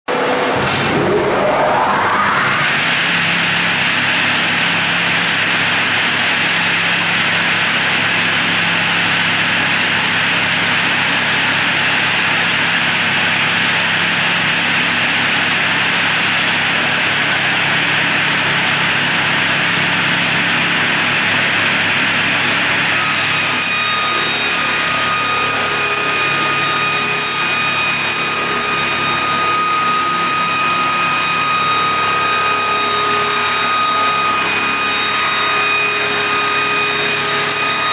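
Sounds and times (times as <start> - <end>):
high multi-tone whine: 0.1 - 5.5, 22.6 - 37.9
circular saw machine running: 0.1 - 37.9.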